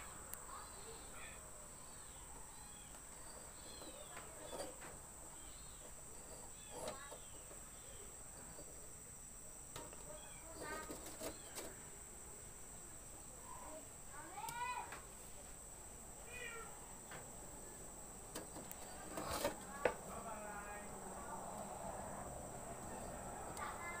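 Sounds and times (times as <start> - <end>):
chirping animal calls: 0.0 - 8.9
high insect drone: 0.0 - 24.0.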